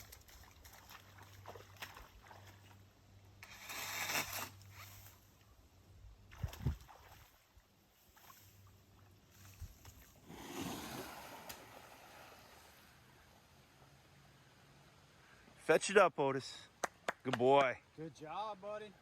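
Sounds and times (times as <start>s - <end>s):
water sloshing: 0.0s - 2.9s, 6.3s - 12.8s.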